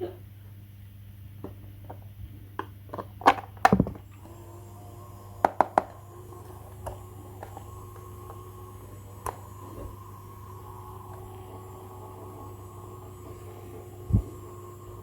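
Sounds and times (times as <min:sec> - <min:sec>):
low hum: 0:04.1 - 0:15.0.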